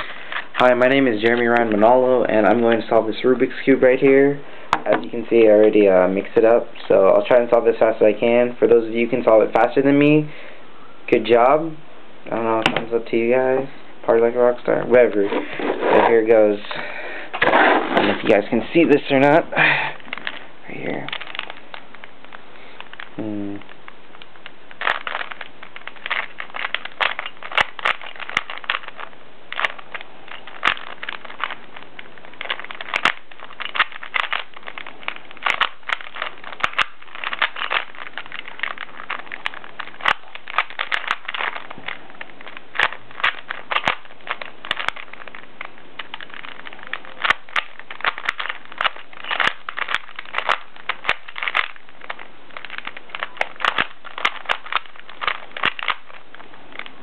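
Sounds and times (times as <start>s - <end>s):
plastic puzzle cube clicking: 22.8s - 57.0s.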